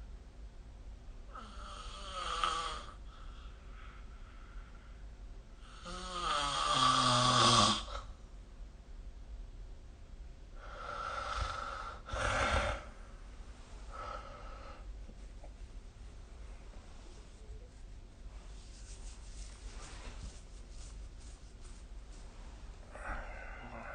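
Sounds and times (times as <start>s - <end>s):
person snoring: 10.6s - 12.9s, 22.9s - 23.9s.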